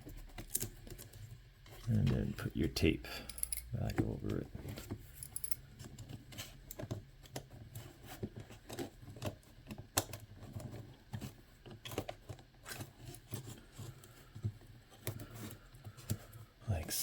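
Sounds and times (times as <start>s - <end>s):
low steady hum: 1.7s - 5.7s.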